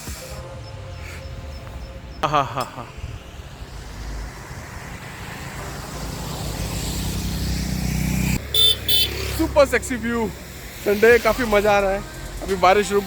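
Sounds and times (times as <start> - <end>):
vehicle engine running: 3.2 - 13.0.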